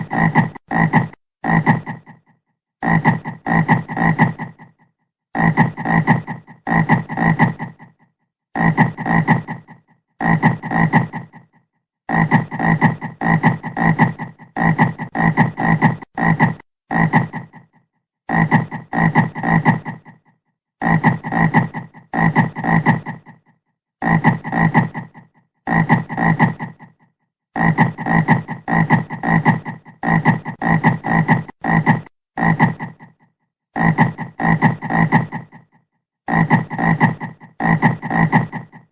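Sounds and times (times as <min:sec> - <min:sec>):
frog croaking: 0:00.0 - 0:04.8.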